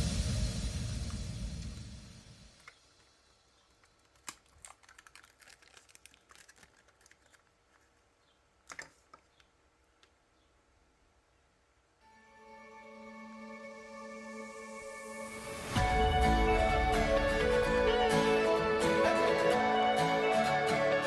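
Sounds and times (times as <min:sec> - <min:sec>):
plastic packaging clicks and crinkles: 0:02.6 - 0:10.2
background music: 0:12.0 - 0:21.0.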